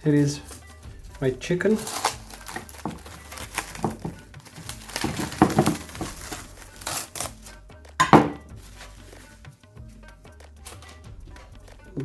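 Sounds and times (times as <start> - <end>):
packaging crinkling: 1.6 - 7.4.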